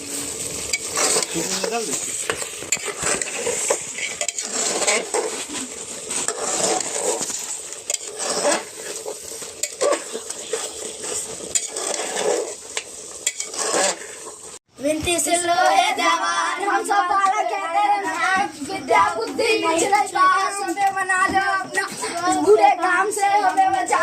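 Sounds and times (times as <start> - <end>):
meat sizzling: 0.0 - 14.6
metal spoon scraping a pot: 0.4 - 14.6.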